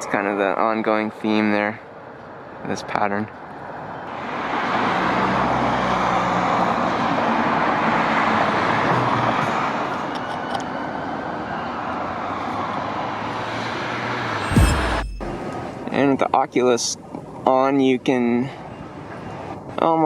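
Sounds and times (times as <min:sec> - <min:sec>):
vehicle passing on road: 0:11.9 - 0:15.8.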